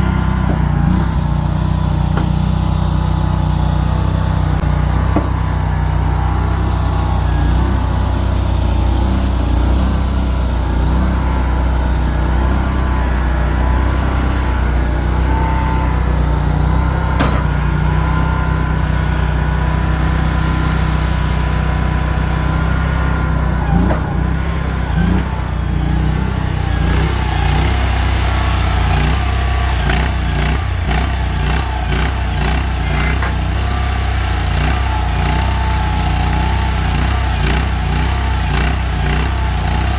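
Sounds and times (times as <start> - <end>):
small engine running: 0.0 - 39.9
knocks: 2.1 - 2.6, 5.1 - 5.5, 17.2 - 17.7.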